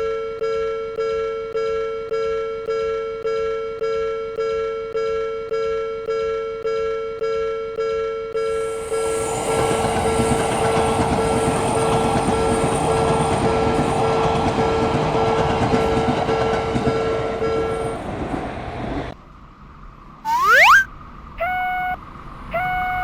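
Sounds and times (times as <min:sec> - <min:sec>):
train wheels on rails: 0:08.6 - 0:19.2
rising tone sweep: 0:20.3 - 0:22.0.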